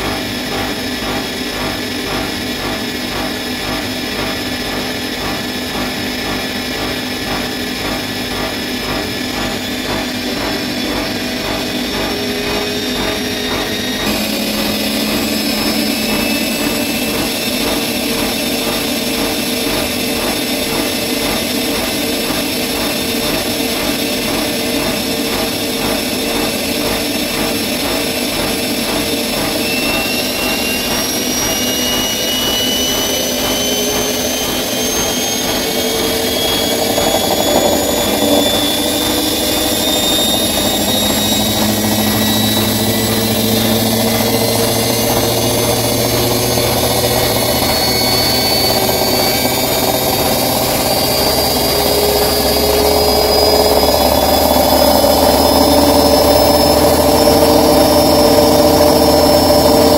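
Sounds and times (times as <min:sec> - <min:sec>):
washing machine spinning: 0:00.0 - 0:59.9.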